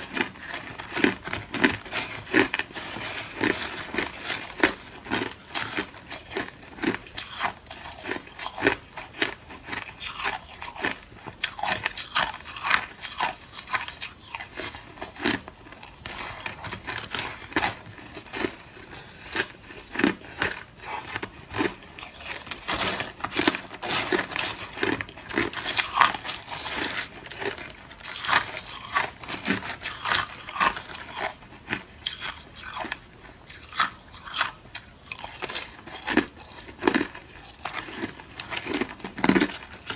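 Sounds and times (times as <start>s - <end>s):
crunching ice being chewed: 0.0s - 39.9s.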